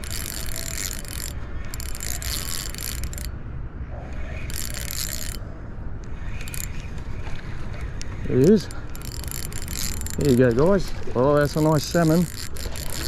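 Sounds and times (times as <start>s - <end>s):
fishing reel ratchet whirring: 0.0s - 3.3s, 4.4s - 5.4s, 6.1s - 6.9s, 8.6s - 13.0s.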